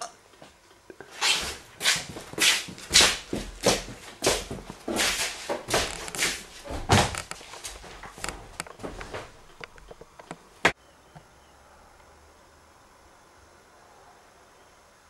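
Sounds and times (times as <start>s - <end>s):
thumps and footsteps: 1.3s - 10.8s.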